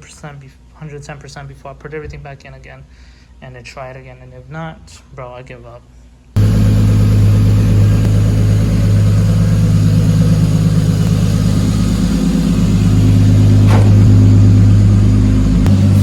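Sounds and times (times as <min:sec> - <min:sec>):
car engine running steadily: 0:06.4 - 0:16.0.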